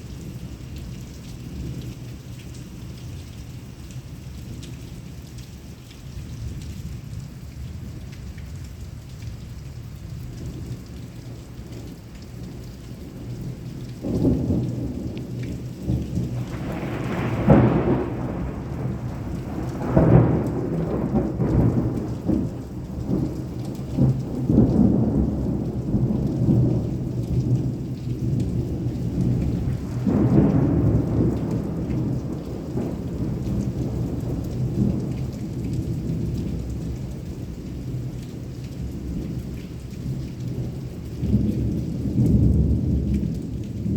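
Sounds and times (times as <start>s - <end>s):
heavy rain: 0.0s - 43.9s
thunder rumbling and clapping: 11.7s - 43.9s.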